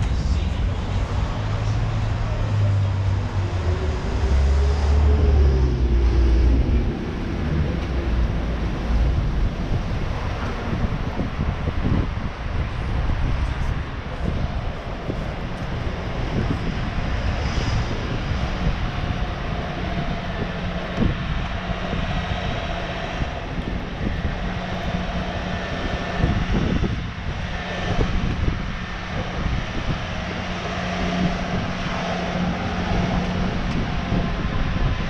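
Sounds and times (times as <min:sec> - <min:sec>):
engine drone: 0:00.0 - 0:35.0
low hum: 0:00.0 - 0:35.0
street noise: 0:00.0 - 0:35.0.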